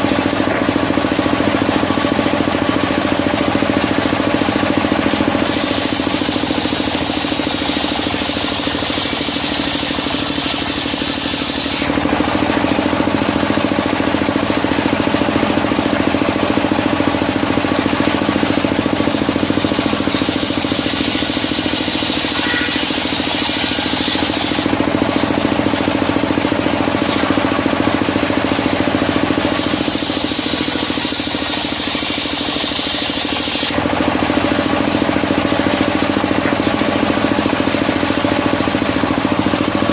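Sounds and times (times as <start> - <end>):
circular sawmill running: 0.0 - 39.9
saw blade cutting logs: 4.8 - 12.3, 16.9 - 36.9.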